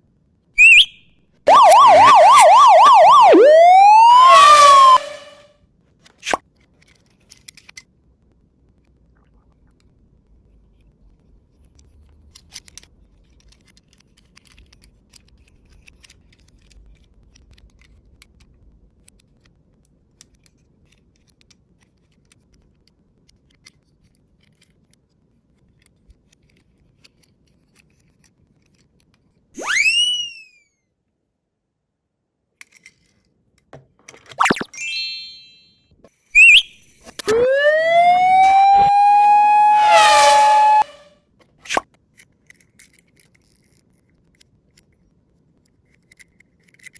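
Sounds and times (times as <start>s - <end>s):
siren whoop sound effect: 0.6s - 0.9s, 1.5s - 5.4s, 29.6s - 30.4s, 34.4s - 35.6s, 36.4s - 41.1s.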